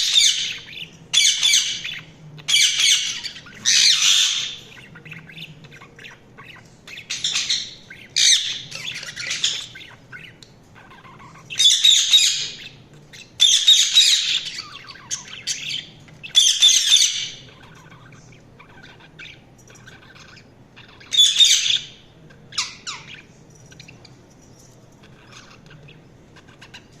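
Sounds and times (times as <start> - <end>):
budgerigars squawking: 0.0 - 24.0, 25.0 - 27.0
budgerigars twittering: 0.0 - 24.3, 24.9 - 27.0
faint low hum: 0.0 - 27.0.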